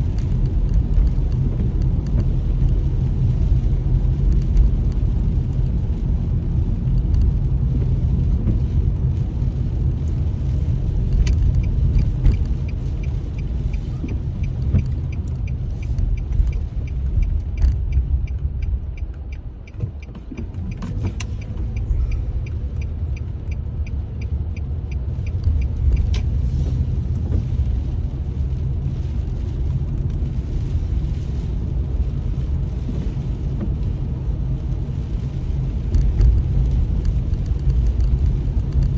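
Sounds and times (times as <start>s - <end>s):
car engine and tyre rumble: 0.0s - 38.9s
light ticking: 10.2s - 27.6s.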